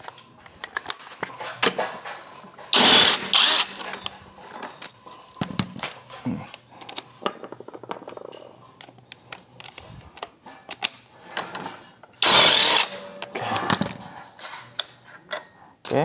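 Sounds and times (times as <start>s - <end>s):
metal tools clicking and knocking: 3.7s - 6.1s.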